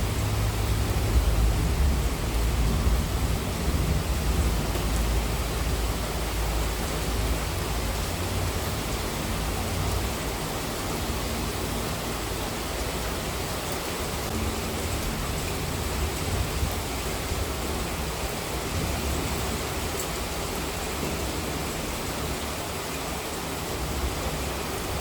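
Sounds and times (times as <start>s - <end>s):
heavy rain falling: 0.0s - 25.0s.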